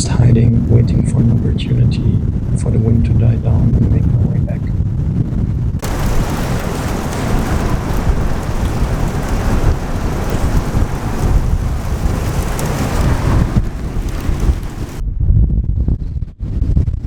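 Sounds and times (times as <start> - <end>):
steady wind hiss: 0.0 - 15.0
wind buffeting microphone: 0.0 - 17.0.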